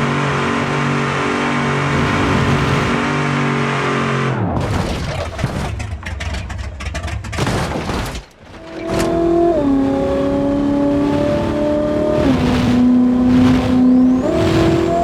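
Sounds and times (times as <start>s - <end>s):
car engine at high revs: 0.0s - 7.6s, 8.4s - 15.0s
rattling knocks and impacts: 4.6s - 9.1s.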